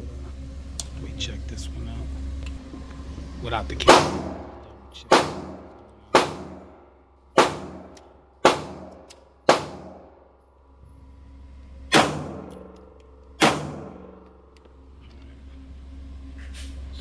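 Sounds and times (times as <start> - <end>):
gunshots echoing: 3.8 - 6.8, 7.4 - 10.1, 11.9 - 12.8, 13.4 - 14.2.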